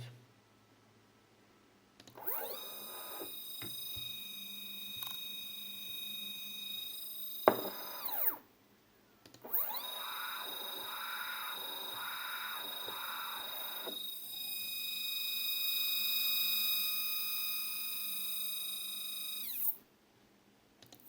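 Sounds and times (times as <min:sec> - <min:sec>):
stepper motor whine: 0:02.2 - 0:08.4, 0:09.4 - 0:19.8.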